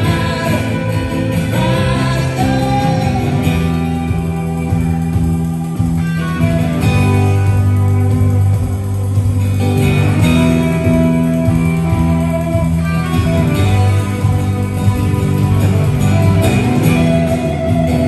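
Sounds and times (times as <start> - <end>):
bass line: 0.0 - 18.0
guitar-led band instrumental: 0.0 - 18.0.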